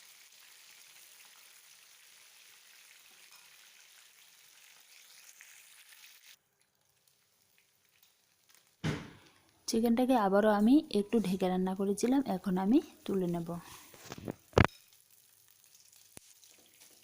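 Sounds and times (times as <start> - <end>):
chicken sizzling in oil: 0.0 - 6.4, 14.5 - 17.0.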